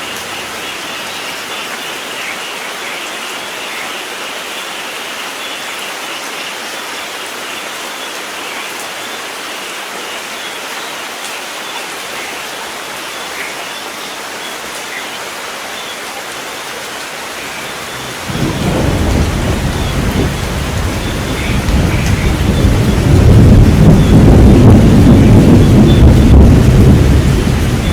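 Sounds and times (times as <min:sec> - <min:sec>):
steady rain falling: 0:00.0 - 0:27.9
low rumble of thunder: 0:17.5 - 0:27.9.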